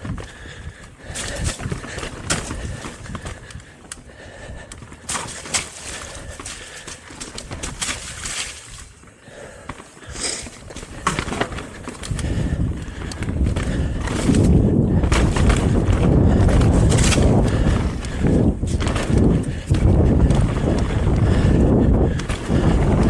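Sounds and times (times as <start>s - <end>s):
bicycle tyres on dirt trail: 0.0s - 23.0s
bicycle frame rattling clicks: 10.2s - 23.0s.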